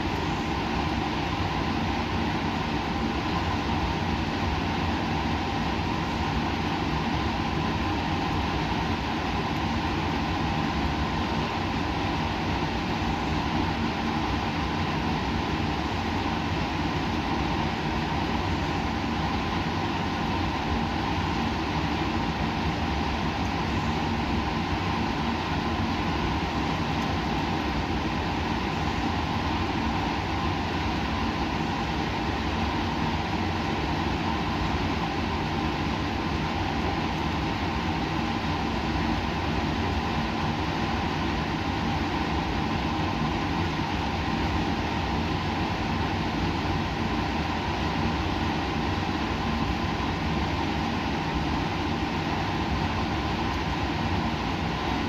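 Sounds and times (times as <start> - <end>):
laboratory equipment humming: 0.0 - 55.0.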